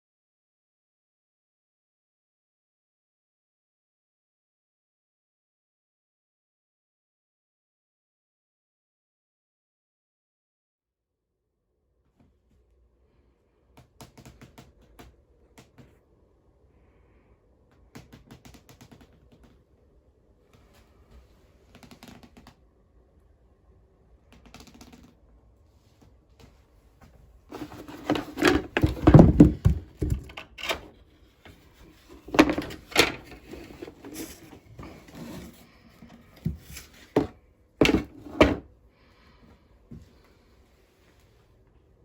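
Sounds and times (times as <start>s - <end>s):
knocks and clattering thuds: 27.6s - 30.9s.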